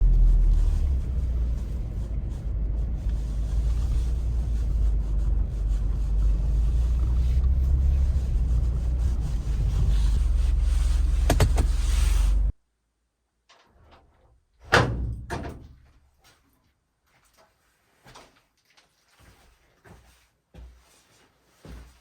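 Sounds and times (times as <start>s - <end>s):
wind noise: 0.0s - 12.5s
vehicle engine rumble: 0.0s - 12.6s.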